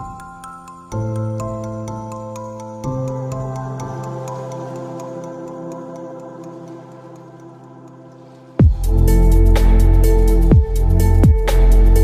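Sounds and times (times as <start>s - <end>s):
electronic music with heavy bass: 8.6s - 12.0s.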